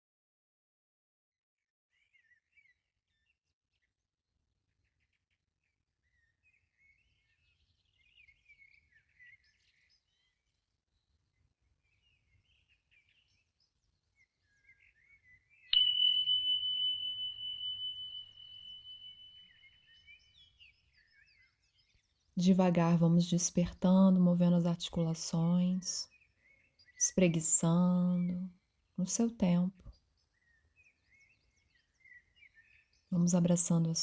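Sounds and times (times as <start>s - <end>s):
faint birds chirping: 6.0s - 34.0s
meditation bell ringing: 15.8s - 20.1s.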